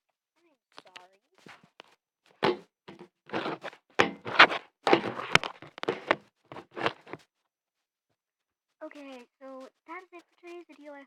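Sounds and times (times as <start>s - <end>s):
handling squelches and knocks: 0.8s - 7.2s
sharp thunk: 4.0s - 6.2s.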